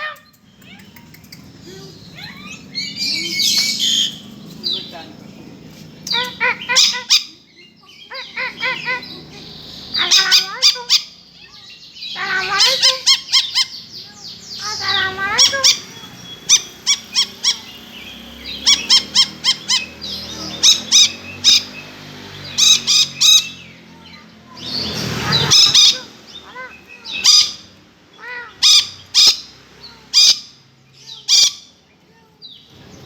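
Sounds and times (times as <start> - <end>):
parrot screeching: 0.0 - 1.0, 2.1 - 4.3, 6.1 - 7.4, 8.0 - 9.2, 9.8 - 13.9, 14.5 - 23.7, 24.7 - 31.7
parrot calling: 0.0 - 5.1, 6.0 - 32.0.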